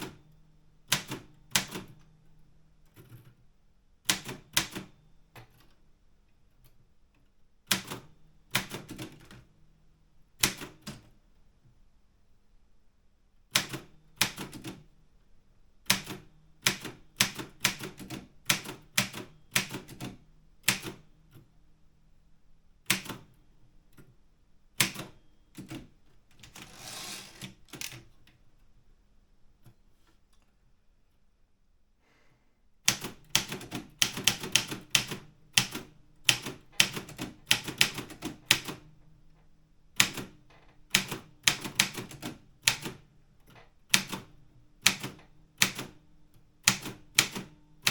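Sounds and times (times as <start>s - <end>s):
brief rasping sound: 26.5s - 27.5s.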